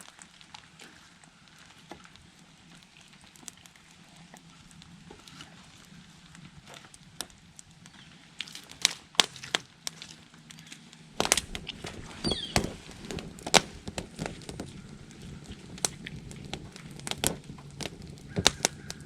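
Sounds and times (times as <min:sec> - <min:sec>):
kindling wood cracking and snapping: 0:00.0 - 0:19.0
low wooden knocks: 0:11.2 - 0:19.0.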